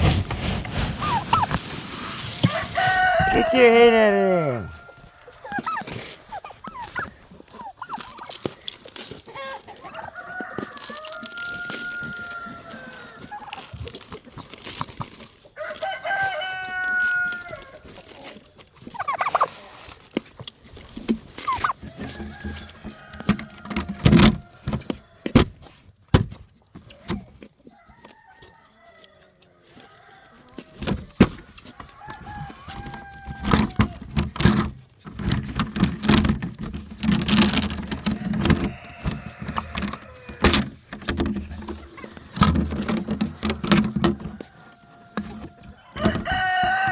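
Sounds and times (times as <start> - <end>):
chickens clucking: 0.0 - 46.9
roosters crowing: 1.0 - 7.2, 9.3 - 13.8, 15.4 - 18.0, 21.4 - 25.4, 27.7 - 34.6, 35.2 - 46.9.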